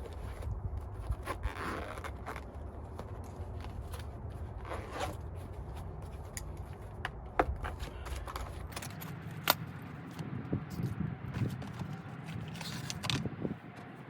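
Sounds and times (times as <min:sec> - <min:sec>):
tools scraping and knocking: 0:06.0 - 0:09.6.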